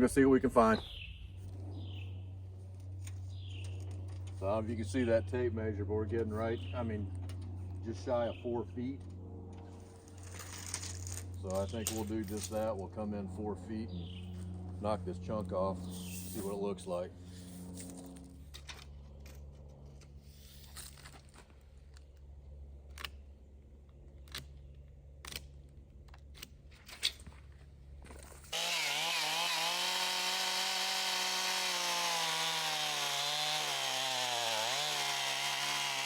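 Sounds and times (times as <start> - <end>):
chainsaw cutting a log: 28.5 - 36.0.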